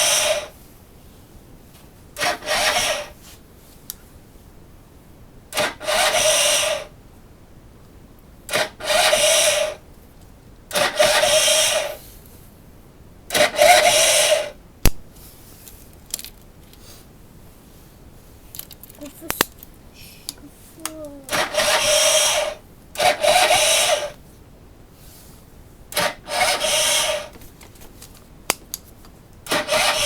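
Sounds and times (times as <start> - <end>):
engine cranking without starting: 0.0 - 0.5, 2.2 - 3.2, 5.5 - 6.9, 8.5 - 9.8, 10.7 - 12.0, 13.3 - 14.6, 21.3 - 24.2, 25.9 - 27.4, 29.4 - 30.0.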